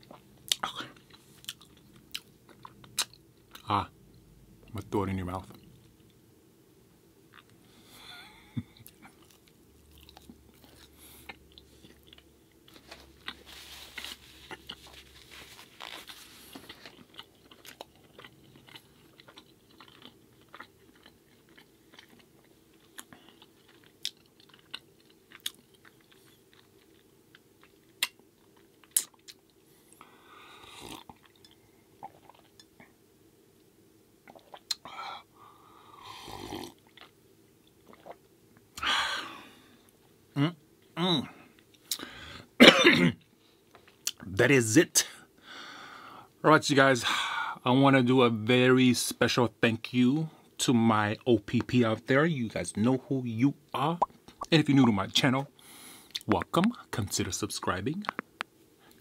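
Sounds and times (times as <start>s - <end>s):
close chewing: 8.8s - 29.4s.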